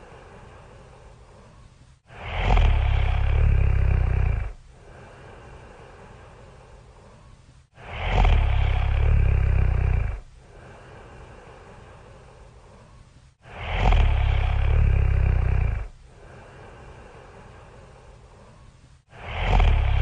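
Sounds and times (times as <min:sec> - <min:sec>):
quiet breathing: 0:00.0 - 0:20.0
loud snoring: 0:02.1 - 0:06.4, 0:07.8 - 0:20.0.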